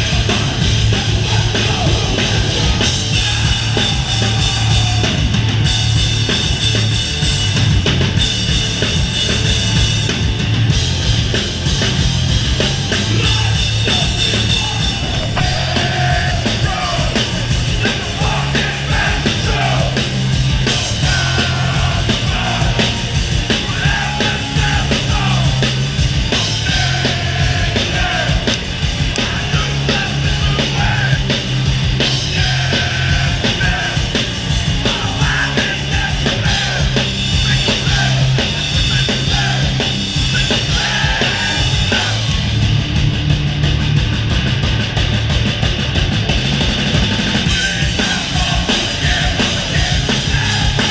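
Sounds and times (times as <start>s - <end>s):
shouted vocals: 0.0s - 5.5s, 12.7s - 31.4s, 32.0s - 42.4s, 47.4s - 50.9s
hardcore band playing live: 0.0s - 50.9s.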